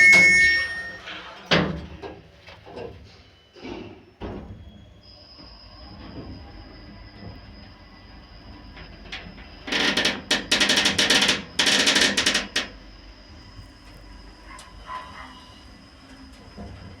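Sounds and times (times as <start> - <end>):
faint high whine: 0.0 - 1.1
lift car creaking and rattling: 0.0 - 1.1, 9.6 - 12.8.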